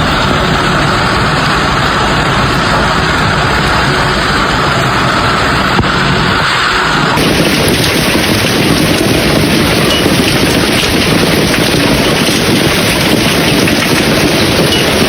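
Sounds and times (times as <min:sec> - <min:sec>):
wind on microphone: 0:00.0 - 0:15.0
hail clattering: 0:07.2 - 0:15.0.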